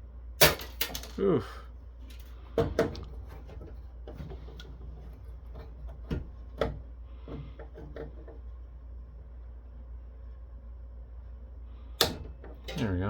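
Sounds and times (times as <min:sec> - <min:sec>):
hand tools clicking and knocking: 0:12.0 - 0:13.0.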